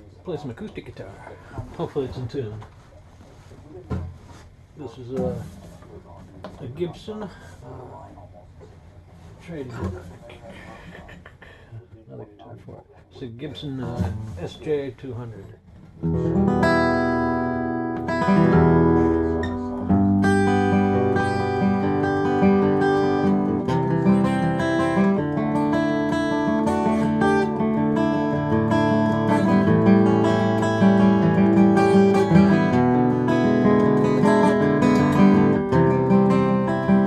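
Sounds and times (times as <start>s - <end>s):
acoustic guitar playing: 16.0s - 37.0s.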